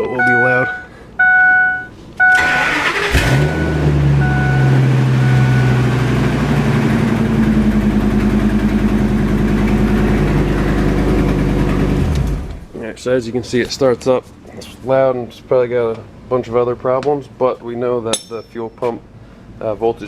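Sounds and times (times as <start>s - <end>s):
short electronic beep: 0.0s - 2.6s, 3.3s - 5.9s
truck engine cranking and running: 2.2s - 12.7s.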